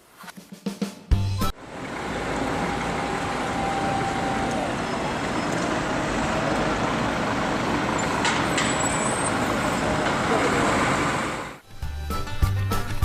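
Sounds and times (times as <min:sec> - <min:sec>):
bus engine and road noise: 0:01.1 - 0:12.0.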